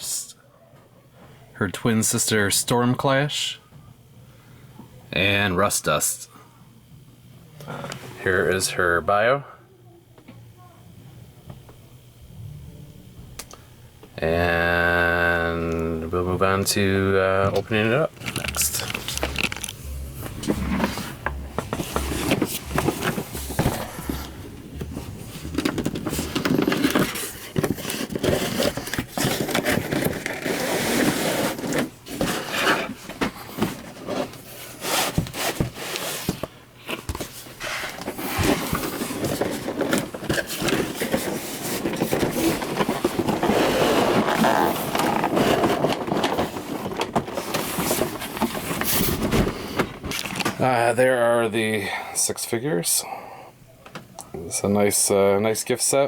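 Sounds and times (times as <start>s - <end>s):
cardboard and plastic rustling: 16.4s - 50.8s.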